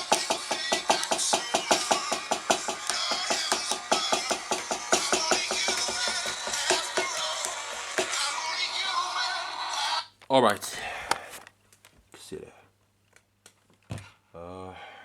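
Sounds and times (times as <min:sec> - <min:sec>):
amplified drums fast strokes: 0:00.0 - 0:08.4.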